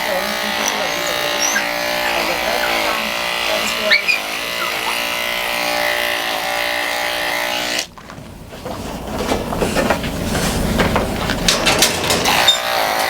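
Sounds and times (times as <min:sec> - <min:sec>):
electric clippers buzzing: 0:00.0 - 0:07.9, 0:12.1 - 0:13.0.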